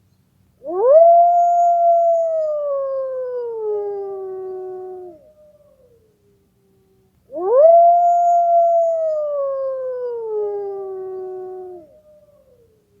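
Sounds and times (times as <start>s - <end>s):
wolf howling: 7.3s - 12.6s.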